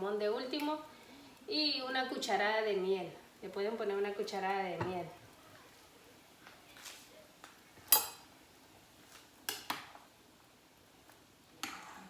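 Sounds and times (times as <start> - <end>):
kitchenware clinking: 7.9 - 8.3.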